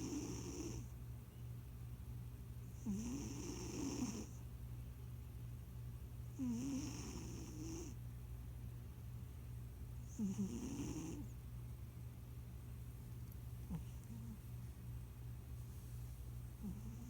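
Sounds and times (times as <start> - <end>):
cat snoring: 0.0 - 0.9, 2.8 - 4.4, 6.3 - 8.0, 10.0 - 11.3, 16.6 - 17.0
steady low hum: 0.0 - 17.0.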